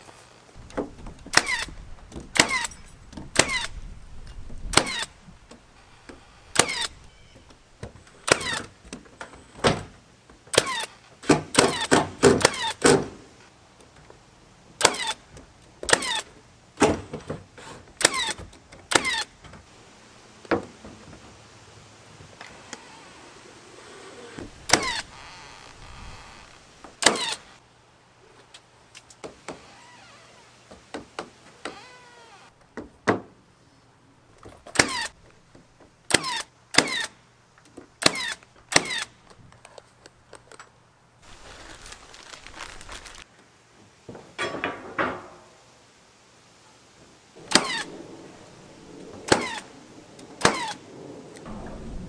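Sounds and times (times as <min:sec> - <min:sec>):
hammer driving nails into wood: 0:00.7 - 0:03.7, 0:06.5 - 0:06.9, 0:08.2 - 0:08.7, 0:10.5 - 0:13.2, 0:14.8 - 0:15.2, 0:27.0 - 0:27.4, 0:34.7 - 0:35.1, 0:36.1 - 0:37.1, 0:38.0 - 0:39.1, 0:47.5 - 0:47.9.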